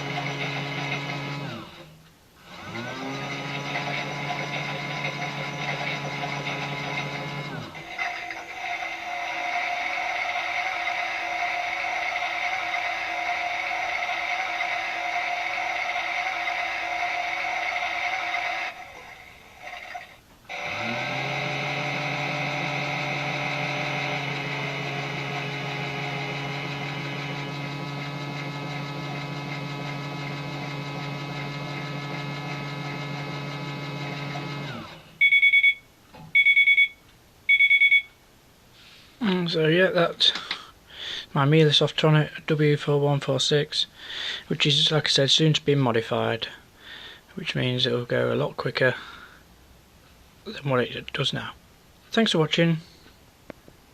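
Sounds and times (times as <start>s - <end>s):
low motor hum: 0.0s - 1.9s, 2.5s - 35.1s
toy washing machine whine: 0.0s - 35.6s.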